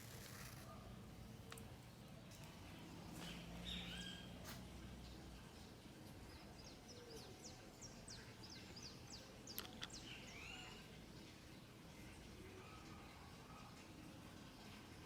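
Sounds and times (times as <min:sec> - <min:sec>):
faint bird chirping: 0:06.2 - 0:11.0.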